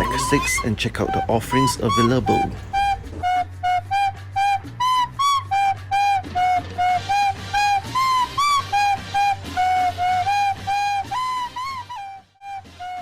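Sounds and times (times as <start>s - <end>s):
flute-like melody: 0.0s - 13.0s.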